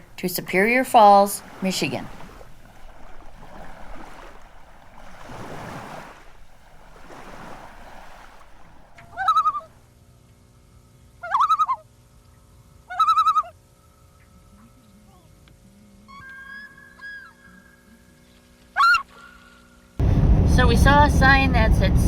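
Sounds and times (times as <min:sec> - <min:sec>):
rushes of noise: 0:00.0 - 0:09.7
steady low hum: 0:00.0 - 0:11.2, 0:20.0 - 0:22.0
wavering bird calls: 0:06.5 - 0:09.8, 0:16.1 - 0:17.9.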